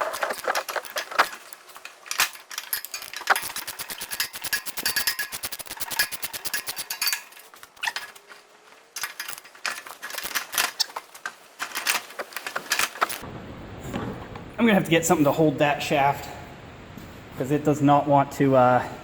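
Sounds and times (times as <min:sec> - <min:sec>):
metal tools clinking: 0:00.0 - 0:13.2
ratchet wrench clicking: 0:02.9 - 0:07.2.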